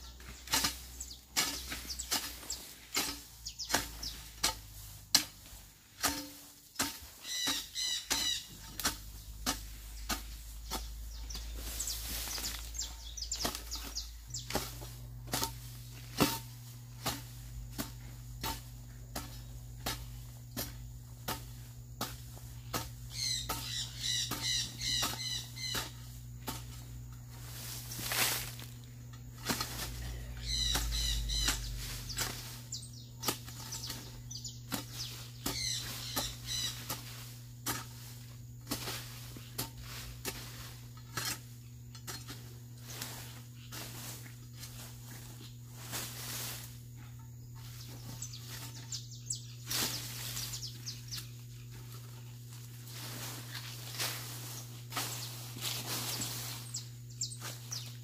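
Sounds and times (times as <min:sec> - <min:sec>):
bird chirping: 0:00.0 - 0:04.2, 0:07.2 - 0:08.5, 0:10.0 - 0:14.6, 0:23.1 - 0:25.8, 0:30.2 - 0:36.8, 0:47.8 - 0:51.7, 0:56.1 - 0:58.0
hoe chopping into soil: 0:00.2 - 0:46.8.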